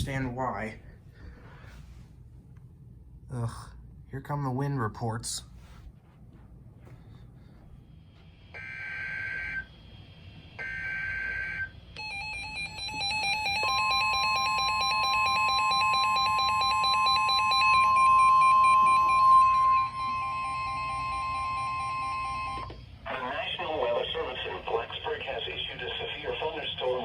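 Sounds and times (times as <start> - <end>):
harsh steady attention tone: 10.6 - 27.0.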